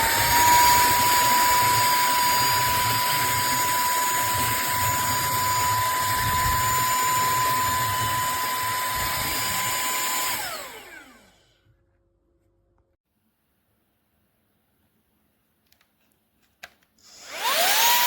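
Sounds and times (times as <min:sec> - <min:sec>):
handheld vacuum cleaner whining: 0:00.0 - 0:11.6, 0:17.0 - 0:18.0.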